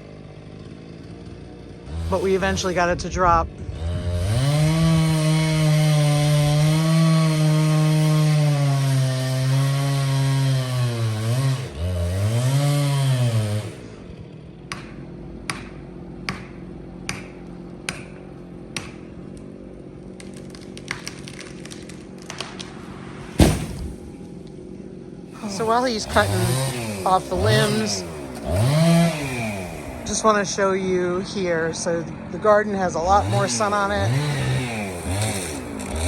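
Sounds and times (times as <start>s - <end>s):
chainsaw cutting wood: 0.0s - 30.7s, 33.0s - 36.0s
sharp knock: 23.4s - 24.0s.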